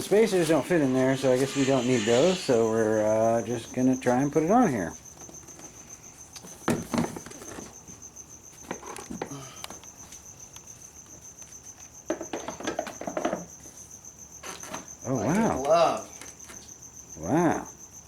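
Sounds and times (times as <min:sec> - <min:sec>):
high-pitched pulsing chirp: 0:00.7 - 0:04.0.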